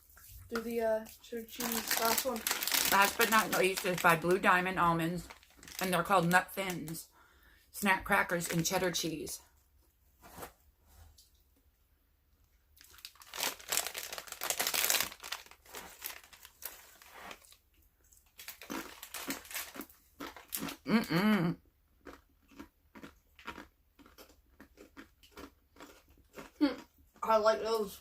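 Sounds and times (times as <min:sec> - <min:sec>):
packaging crinkling and tearing: 0:01.5 - 0:07.0, 0:12.8 - 0:20.8
crunchy chewing of crackers: 0:01.6 - 0:04.4, 0:05.2 - 0:06.0, 0:12.8 - 0:21.2, 0:21.9 - 0:27.3.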